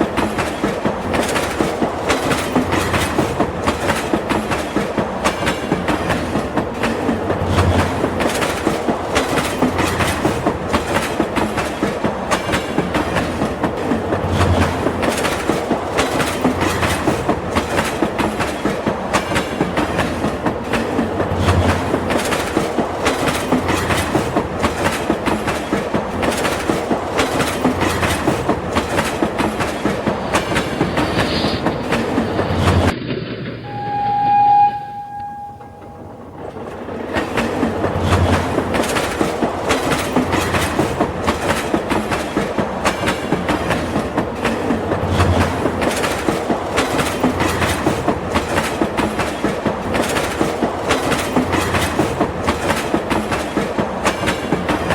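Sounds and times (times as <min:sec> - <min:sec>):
toy train horn tone: 0:33.6 - 0:36.3.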